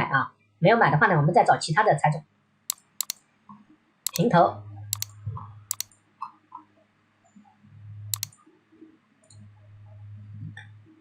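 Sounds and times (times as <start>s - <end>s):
computer mouse clicks: 2.7s - 3.2s, 4.1s - 4.3s, 4.9s - 5.1s, 5.7s - 5.9s, 8.2s - 8.4s.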